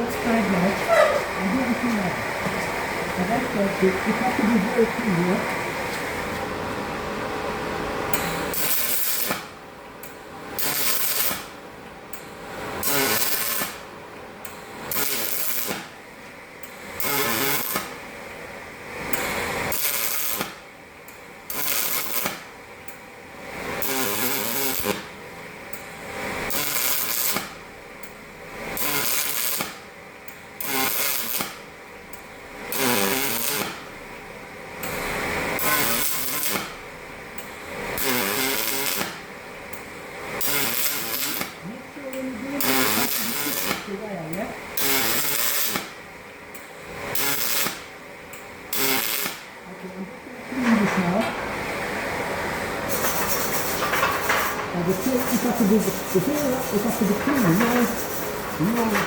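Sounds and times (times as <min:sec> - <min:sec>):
welding arc crackle: 0:08.1 - 0:11.6, 0:12.2 - 0:13.9, 0:14.5 - 0:16.0, 0:16.6 - 0:18.0, 0:19.0 - 0:27.7, 0:28.5 - 0:49.6, 0:52.0 - 0:59.0.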